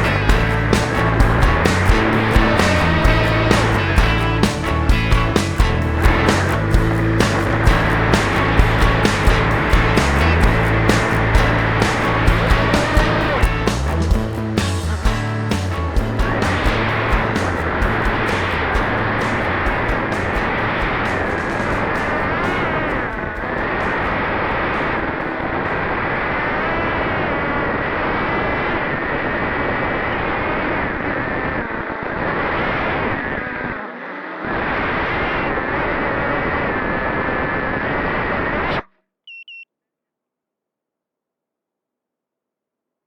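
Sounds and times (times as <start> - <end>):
short high electronic beeps: 39.3 - 39.7.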